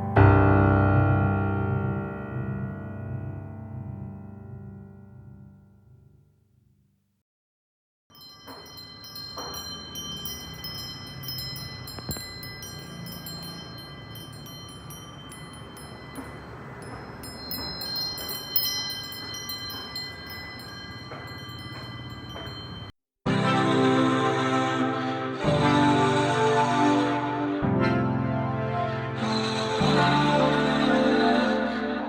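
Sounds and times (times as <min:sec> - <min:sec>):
wind chime tinkling: 0:08.1 - 0:23.0.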